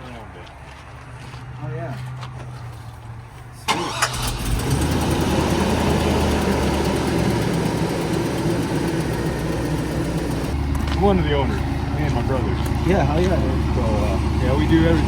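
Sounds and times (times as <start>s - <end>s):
car engine cranking and idling: 3.2s - 15.0s.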